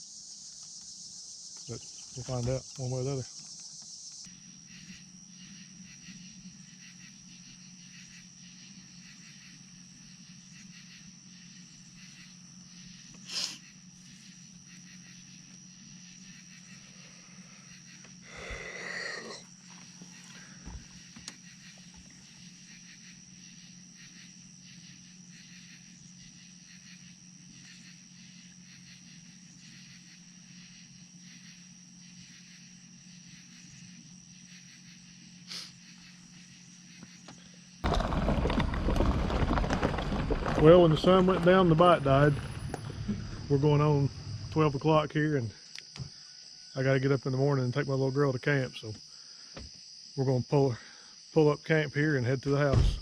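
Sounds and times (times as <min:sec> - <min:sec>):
night insects chorus: 0:00.0 - 0:53.0
low steady hum: 0:39.0 - 0:45.6.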